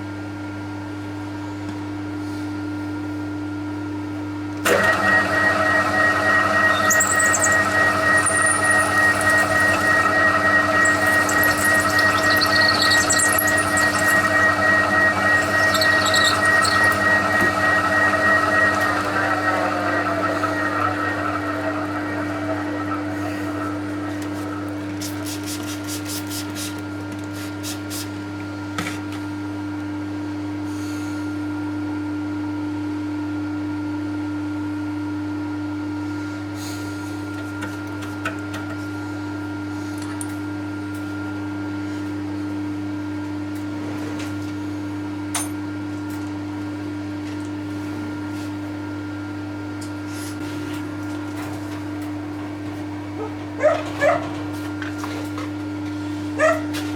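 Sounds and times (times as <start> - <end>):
milling machine motor humming: 4.6 - 26.0.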